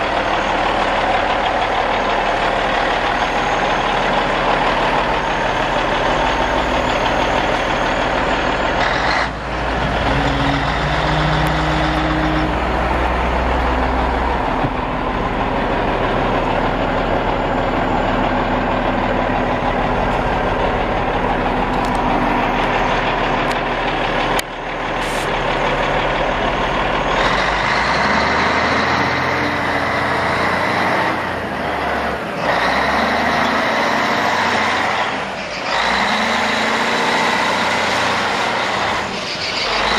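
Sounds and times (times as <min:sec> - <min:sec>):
wheel loader diesel engine running: 0:00.0 - 0:39.9.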